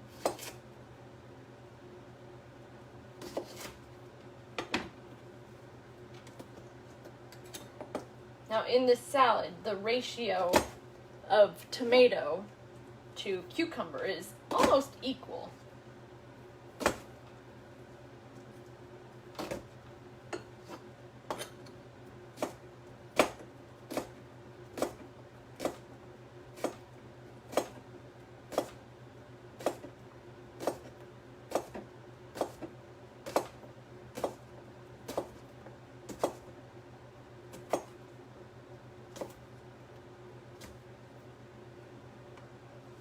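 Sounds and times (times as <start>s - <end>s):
knife chopping on cutting board: 0.1s - 0.6s, 3.2s - 3.8s, 10.5s - 10.8s, 16.8s - 17.1s, 22.4s - 22.6s, 23.2s - 24.2s, 24.8s - 25.0s, 26.6s - 26.8s, 27.5s - 27.8s, 28.5s - 28.8s, 29.6s - 29.9s, 30.6s - 33.6s, 34.2s - 34.4s, 35.0s - 35.4s, 36.1s - 36.5s, 37.5s - 38.0s, 39.1s - 39.4s.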